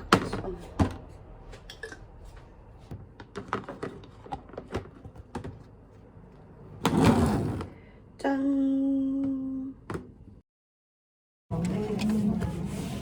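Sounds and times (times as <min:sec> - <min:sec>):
kitchen items clattering: 0:03.0 - 0:05.6.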